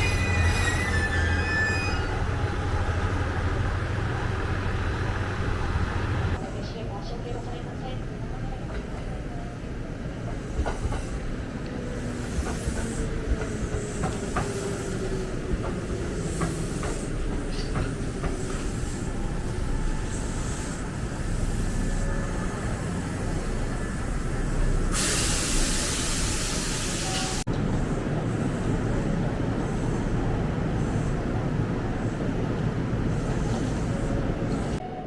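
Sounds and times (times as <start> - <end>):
train rumble: 0.0 - 35.0
loud hiss: 18.7 - 27.5.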